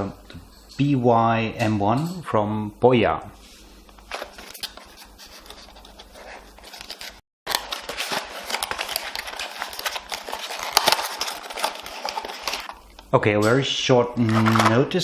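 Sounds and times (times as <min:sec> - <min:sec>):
scratching and rustling: 0:04.1 - 0:12.8.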